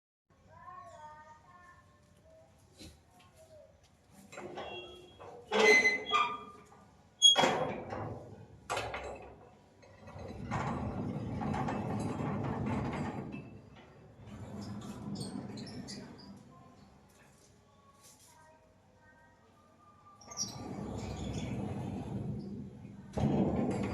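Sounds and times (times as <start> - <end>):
metal gate grating scrape: 4.4 - 7.9, 20.3 - 23.9.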